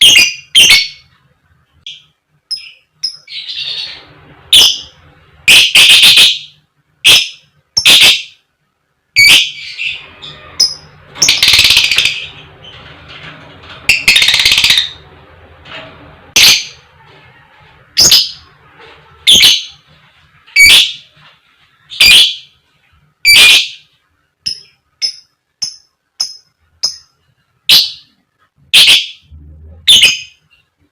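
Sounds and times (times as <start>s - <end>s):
lovebird calling: 9.2s - 12.4s, 13.9s - 15.0s, 19.2s - 19.8s, 20.6s - 21.1s, 21.9s - 22.5s, 23.2s - 23.8s, 28.7s - 29.2s, 29.8s - 30.4s
lovebird chattering: 9.2s - 12.4s, 13.9s - 15.0s, 19.2s - 19.8s, 22.0s - 22.5s, 23.3s - 23.8s, 24.4s - 27.1s, 28.7s - 29.2s, 29.9s - 30.4s.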